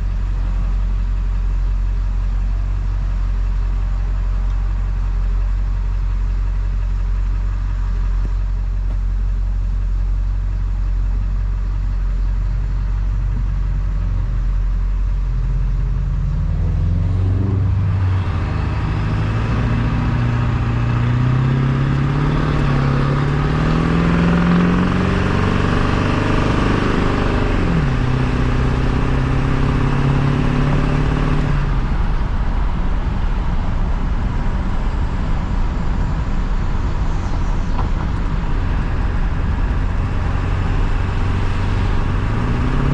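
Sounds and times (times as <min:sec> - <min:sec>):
diesel truck engine revving: 0:10.7 - 0:42.9.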